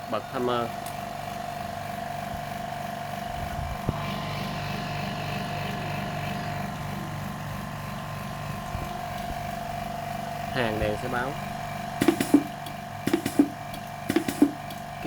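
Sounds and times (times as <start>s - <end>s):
pulsing machine hum: 0.0s - 15.0s
sharp click: 12.0s - 14.9s.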